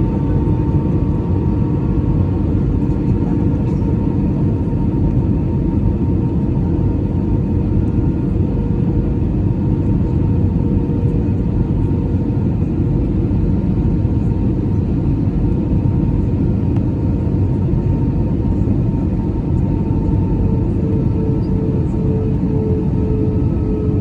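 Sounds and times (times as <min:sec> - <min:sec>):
engine and airflow rumble: 0:00.0 - 0:24.0.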